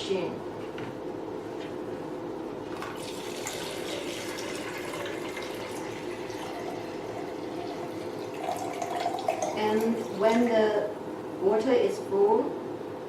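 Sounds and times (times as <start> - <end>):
water pouring into a tank: 2.9 - 10.3.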